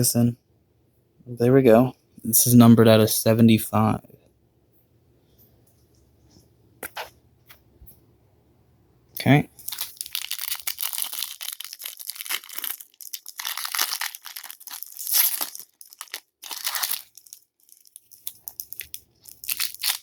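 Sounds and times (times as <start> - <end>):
plastic packaging crinkling: 9.5 - 20.0.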